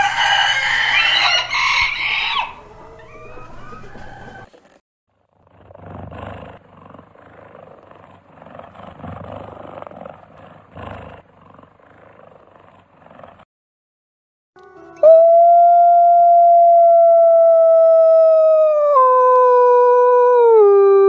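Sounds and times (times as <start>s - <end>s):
big cat growling and roaring: 5.3s - 13.5s.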